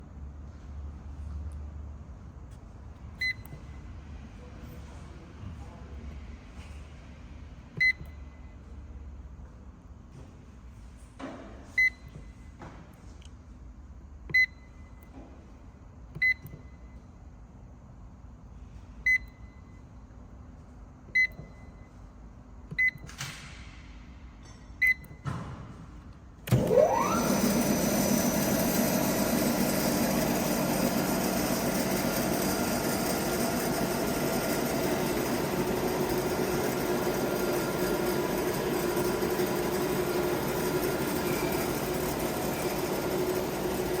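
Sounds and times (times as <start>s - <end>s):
sawmill electric motor running: 26.5s - 44.0s.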